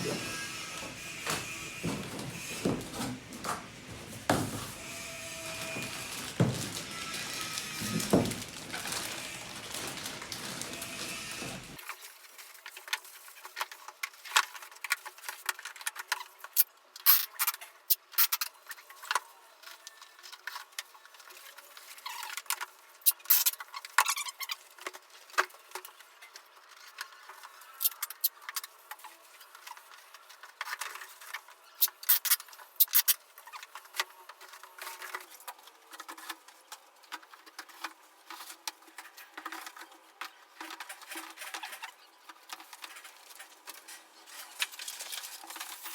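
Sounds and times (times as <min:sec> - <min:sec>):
packaging rustling: 0:00.0 - 0:12.2, 0:42.6 - 0:45.9.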